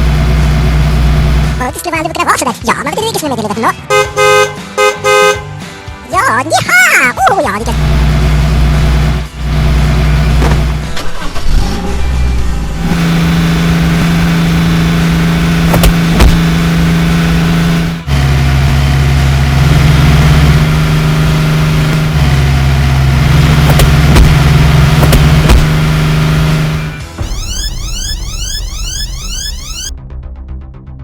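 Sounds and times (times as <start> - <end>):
heavy vehicle engine droning: 0.0 - 1.7, 7.6 - 29.9
sharp clicks: 15.6 - 16.4, 23.6 - 25.7.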